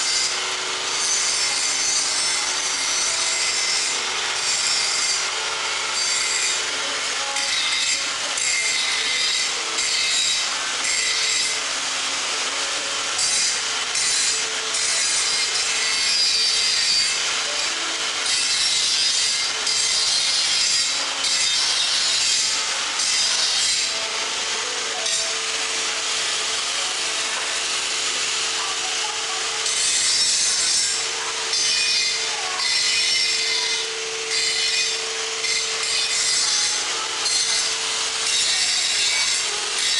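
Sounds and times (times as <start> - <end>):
mixing machine hum: 0.0 - 7.4, 11.5 - 18.6, 19.3 - 39.9.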